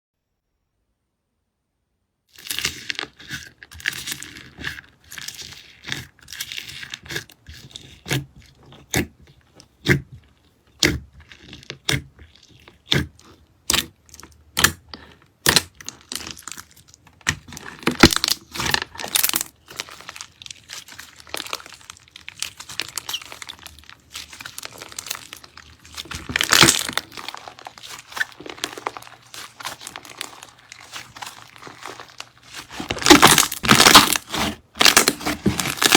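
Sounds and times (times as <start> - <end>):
slime crackling and popping: 13.7 - 35.9.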